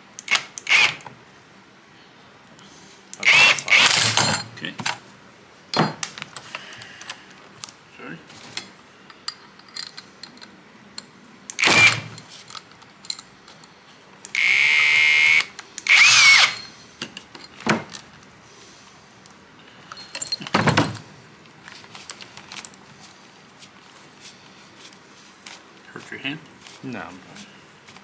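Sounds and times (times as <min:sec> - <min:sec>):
metal tool noise bursts: 0:00.2 - 0:01.0, 0:03.2 - 0:04.5, 0:11.5 - 0:12.2, 0:14.3 - 0:16.8.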